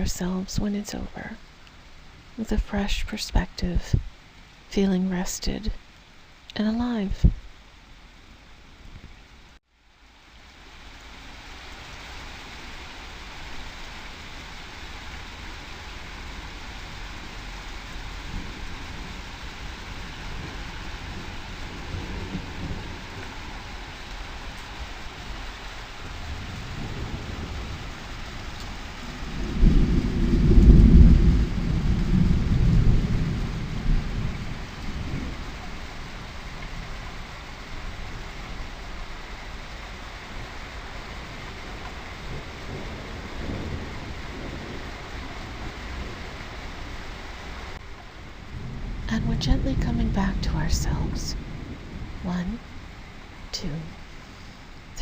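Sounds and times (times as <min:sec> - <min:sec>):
steady rain: 0:00.0 - 0:55.0
distant thunder rolls: 0:15.1 - 0:55.0.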